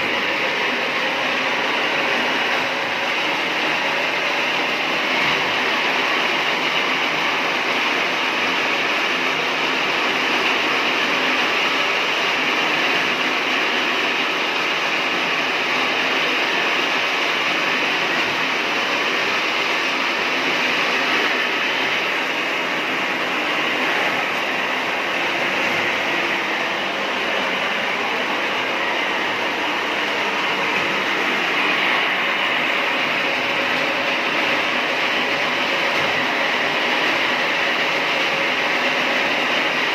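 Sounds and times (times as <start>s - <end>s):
rotisserie machine running: 0.0s - 39.9s.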